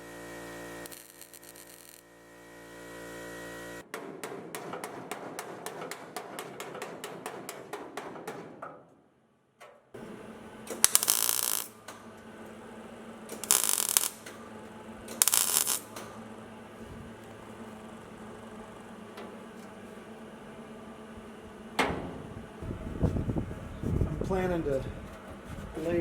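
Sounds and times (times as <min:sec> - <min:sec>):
steady hum: 0:10.0 - 0:26.0.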